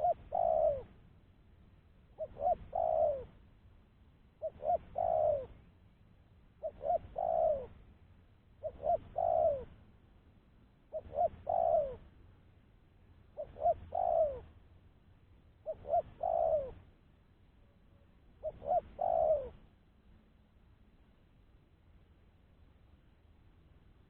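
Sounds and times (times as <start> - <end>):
dove cooing: 0.0 - 1.0, 2.1 - 3.4, 4.4 - 5.7, 6.6 - 7.8, 8.6 - 9.8, 10.9 - 12.1, 13.3 - 14.6, 15.6 - 16.9, 18.4 - 19.7.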